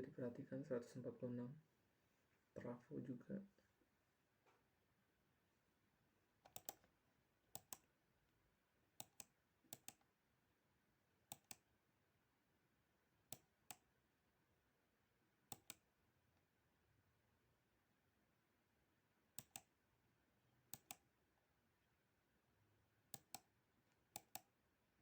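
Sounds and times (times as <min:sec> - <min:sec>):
computer mouse clicks: 0:06.4 - 0:06.9, 0:07.5 - 0:07.9, 0:09.0 - 0:10.1, 0:11.3 - 0:11.7, 0:13.3 - 0:13.9, 0:15.5 - 0:15.9, 0:19.4 - 0:19.7, 0:20.7 - 0:21.1, 0:23.1 - 0:24.6.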